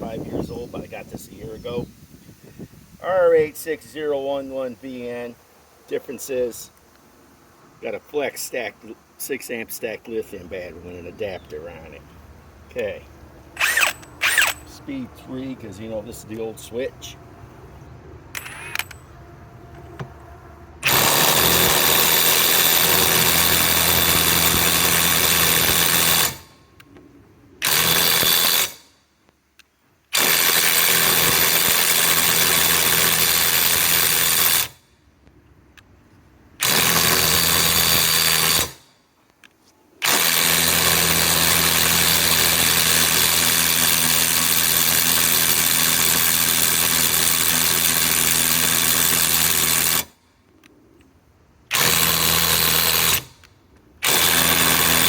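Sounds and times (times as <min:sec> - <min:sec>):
impact wrench hammering on nut: 0:20.8 - 0:26.6, 0:27.6 - 0:28.8.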